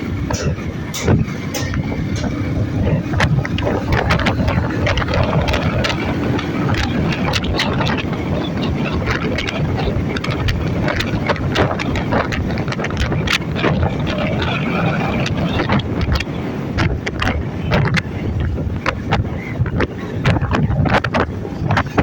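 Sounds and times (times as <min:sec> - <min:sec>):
road vehicle running: 0:00.0 - 0:22.0
wind buffeting microphone: 0:00.0 - 0:22.0
short knocks: 0:00.3 - 0:08.2.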